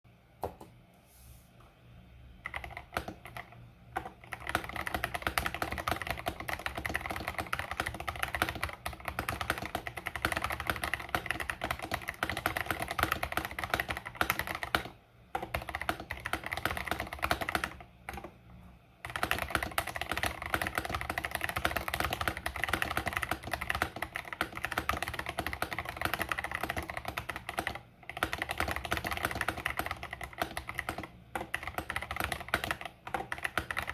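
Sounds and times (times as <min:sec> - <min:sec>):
fast typing on mechanical keyboard: 0:02.4 - 0:18.3, 0:19.0 - 0:33.9.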